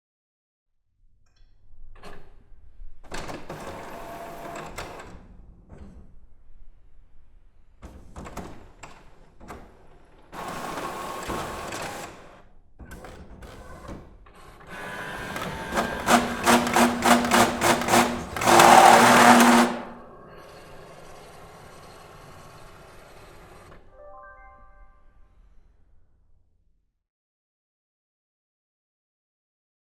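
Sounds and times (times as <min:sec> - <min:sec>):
printer clicks and whir: 0:03.1 - 0:05.2, 0:10.4 - 0:12.3, 0:14.6 - 0:20.2
loud sustained printer whir: 0:03.6 - 0:05.0, 0:10.4 - 0:12.2, 0:14.7 - 0:23.9
rapid printer mechanical strokes: 0:14.7 - 0:23.7.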